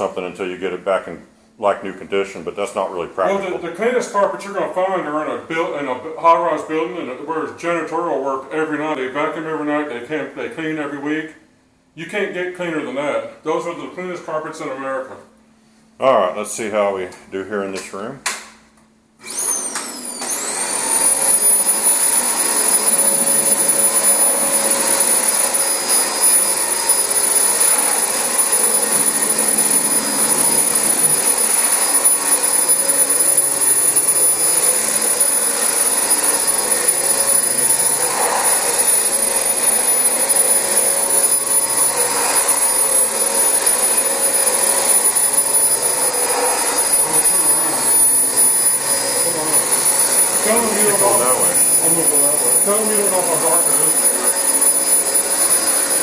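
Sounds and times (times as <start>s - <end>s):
vacuum cleaner running: 19.2s - 56.0s.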